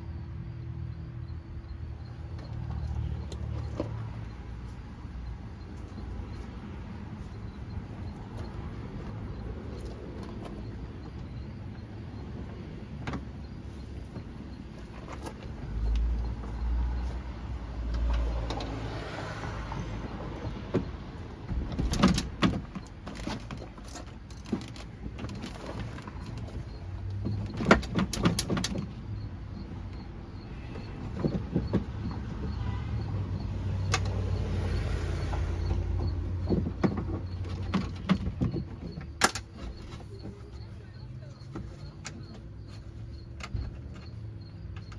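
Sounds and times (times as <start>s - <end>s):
handling thumps: 19.6s - 29.0s.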